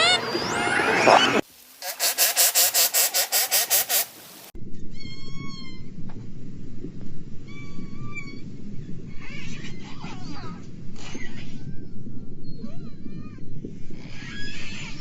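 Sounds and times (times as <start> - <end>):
low rumble: 4.6 - 15.0.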